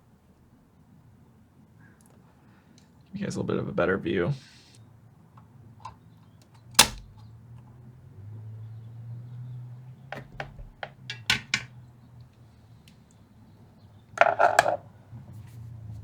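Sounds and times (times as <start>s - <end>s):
tools clicking on metal chassis: 5.8s - 7.3s, 10.2s - 11.7s.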